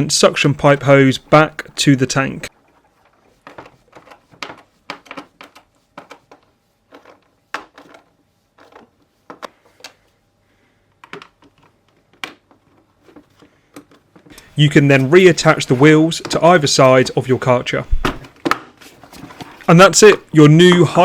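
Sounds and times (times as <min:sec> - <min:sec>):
plastic parts clicking and knocking: 0:03.0 - 0:10.1, 0:10.9 - 0:14.5.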